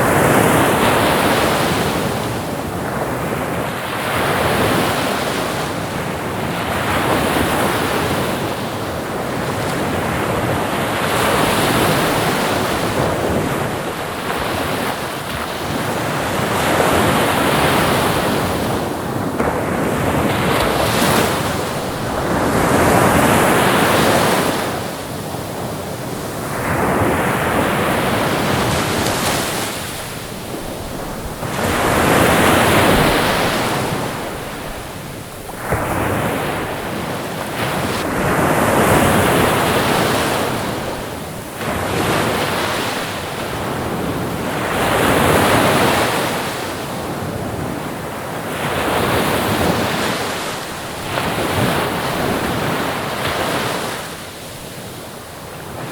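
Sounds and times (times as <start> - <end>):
waves breaking on shore: 0.0 - 55.9.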